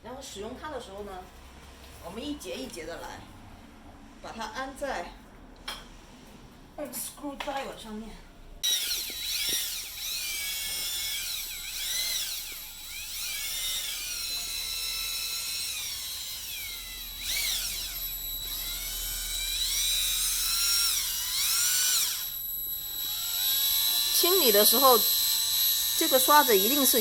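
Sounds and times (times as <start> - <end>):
electric screwdriver motor whine: 8.6 - 27.0.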